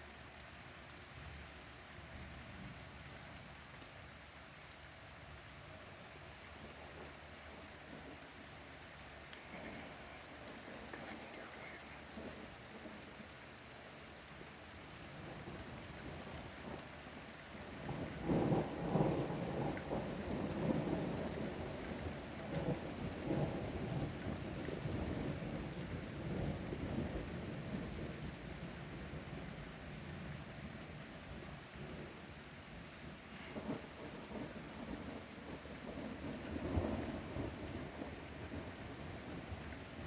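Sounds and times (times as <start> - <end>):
steady rain: 0.0 - 40.0
thunder rumbling: 6.6 - 13.4, 15.1 - 30.8, 33.0 - 40.0.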